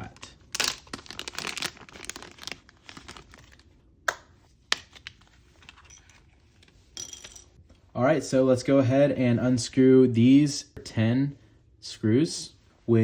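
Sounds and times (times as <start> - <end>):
packaging rustling and crinkling: 0.0 - 3.7.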